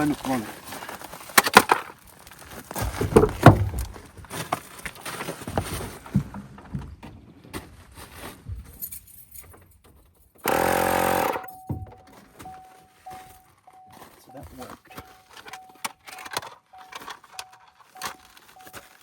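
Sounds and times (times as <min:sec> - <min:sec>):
tire inflator buzzing: 0:10.4 - 0:12.0
tire inflator rattling and knocking: 0:10.4 - 0:12.2.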